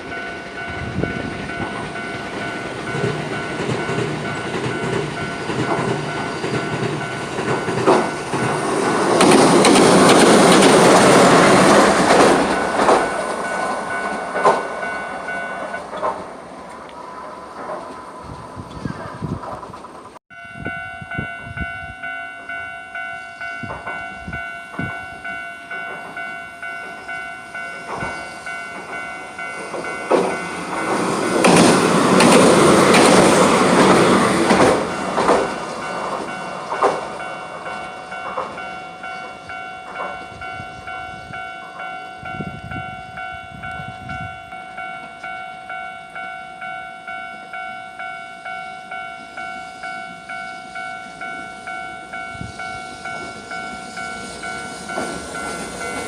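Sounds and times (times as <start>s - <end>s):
level crossing bell ringing: 0.0s - 16.0s, 20.3s - 56.0s
wheels clacking over rail joints: 0.0s - 20.2s, 24.7s - 40.5s, 49.9s - 56.0s
train rumble: 0.0s - 56.0s.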